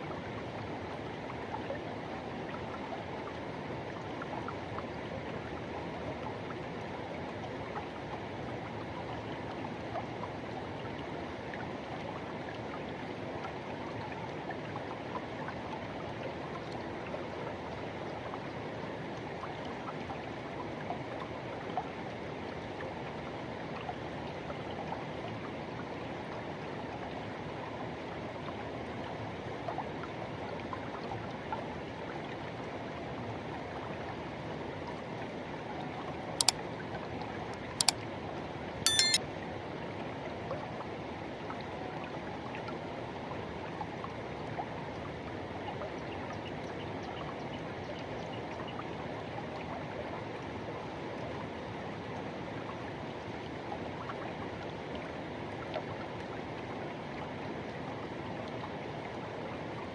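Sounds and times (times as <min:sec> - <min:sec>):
sharp clicks: 0:38.9 - 0:39.2.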